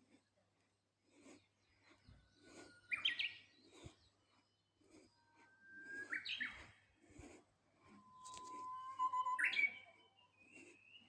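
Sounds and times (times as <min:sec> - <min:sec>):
bush warbler singing: 0:08.2 - 0:11.0.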